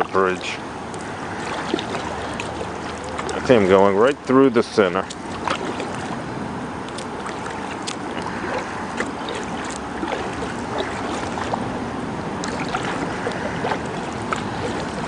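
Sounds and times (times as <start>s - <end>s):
paddle splashing water: 0.0s - 15.0s.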